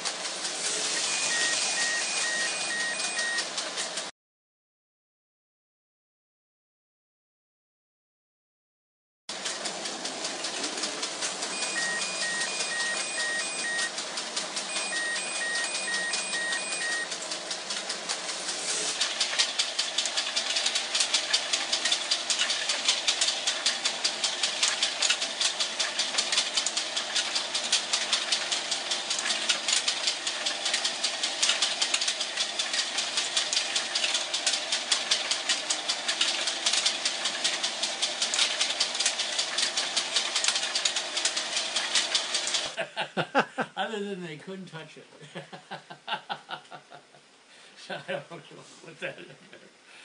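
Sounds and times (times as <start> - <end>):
mechanical hum: 0.0 - 4.1, 9.4 - 50.0
toy train clicking: 0.0 - 4.1, 9.3 - 42.8.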